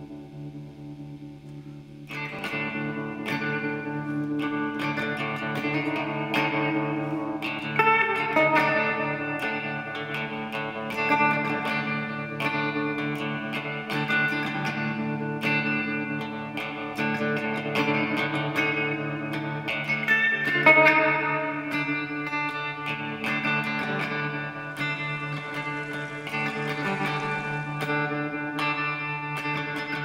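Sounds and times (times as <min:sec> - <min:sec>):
guitar with effects: 0:00.0 - 0:30.0.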